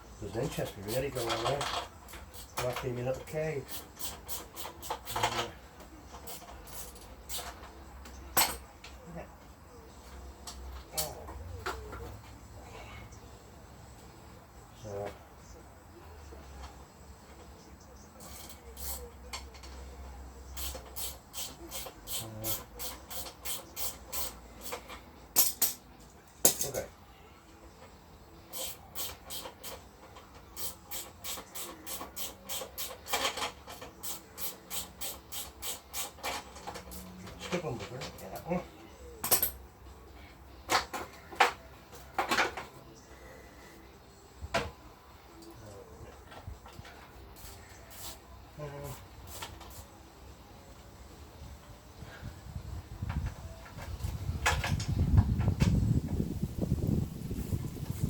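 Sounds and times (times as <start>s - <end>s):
tools knocking and clinking: 6.9s - 8.7s, 24.6s - 25.8s, 26.4s - 26.8s, 39.2s - 39.6s
hand tool rasping on metal: 34.0s - 36.3s.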